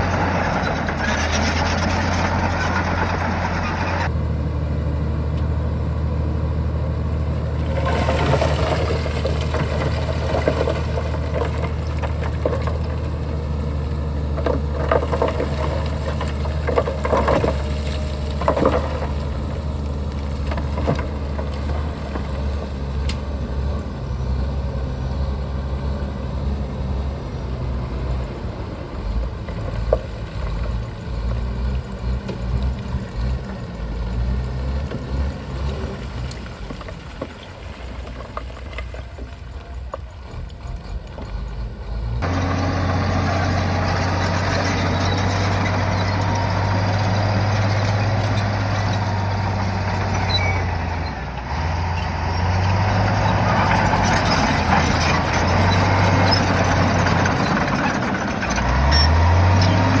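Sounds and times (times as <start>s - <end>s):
clatter: 0.0s - 4.1s, 7.6s - 23.3s, 34.8s - 60.0s
bulldozer diesel engine running: 0.0s - 60.0s.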